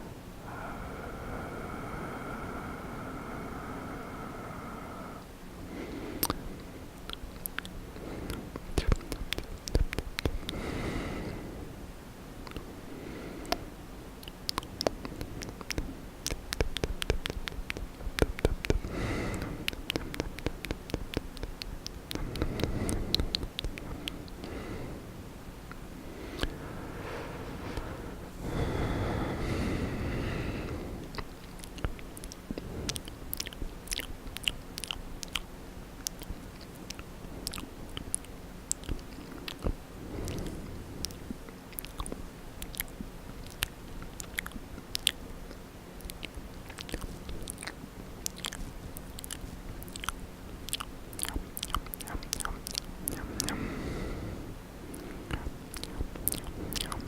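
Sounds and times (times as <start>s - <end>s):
wet mouth clicks and smacks: 6.2s - 6.4s, 7.0s - 10.7s, 12.4s - 12.7s, 14.2s - 24.6s, 25.7s - 26.6s, 31.0s - 53.6s, 54.9s - 57.0s.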